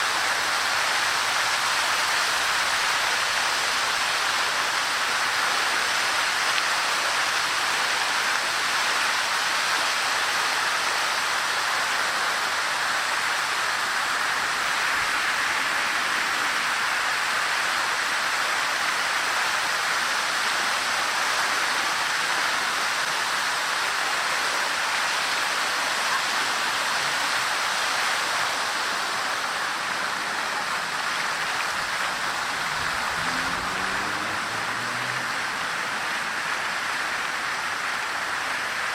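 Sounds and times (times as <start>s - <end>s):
fountain water splashing into basin: 0.0s - 38.9s.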